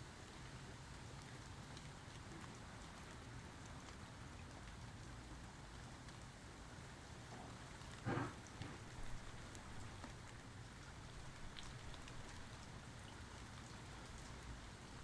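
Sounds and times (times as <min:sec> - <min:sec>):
steady rain falling: 0:00.0 - 0:15.0
raindrops ticking close by: 0:07.6 - 0:15.0.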